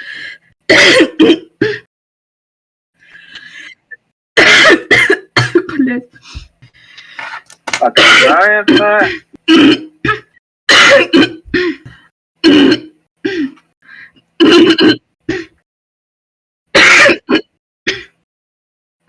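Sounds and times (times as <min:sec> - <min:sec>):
woman clearing her throat: 0:08.0 - 0:11.4.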